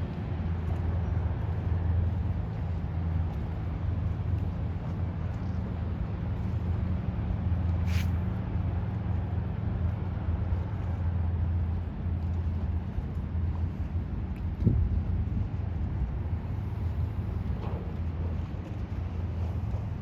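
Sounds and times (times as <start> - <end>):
brief hiss: 7.8 - 8.2.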